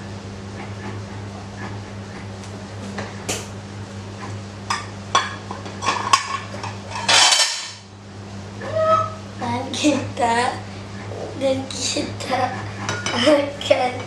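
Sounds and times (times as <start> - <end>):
utensil scraping frying pan: 5.8 - 7.8.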